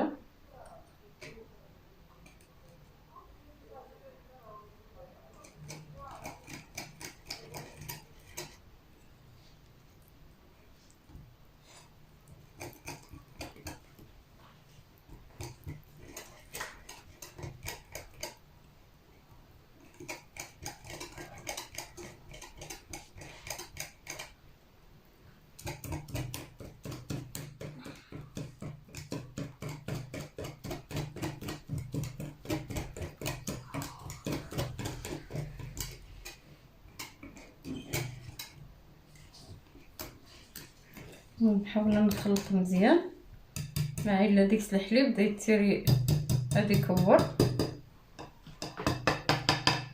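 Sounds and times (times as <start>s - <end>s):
batter squelching when stirred: 5.0s - 24.5s, 25.1s - 49.0s
utensil clicking against bowl: 5.4s - 8.6s, 12.3s - 14.1s, 15.0s - 18.4s, 19.8s - 24.4s, 25.6s - 38.6s, 39.2s - 42.6s, 43.5s - 44.1s.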